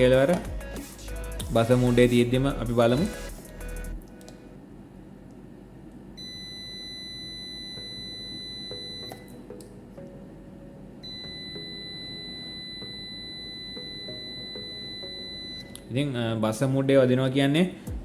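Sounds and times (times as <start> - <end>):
multimeter continuity beep: 6.2 - 9.6, 11.0 - 15.9.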